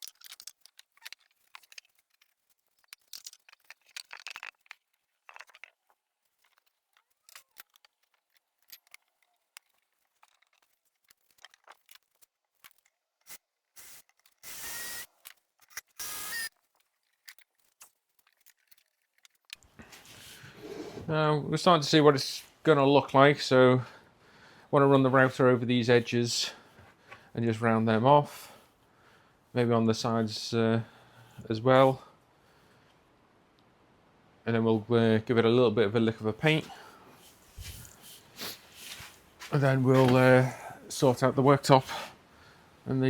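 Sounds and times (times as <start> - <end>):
wood and screws clicking: 0.0 - 19.6
small cordless power tool: 13.3 - 16.5.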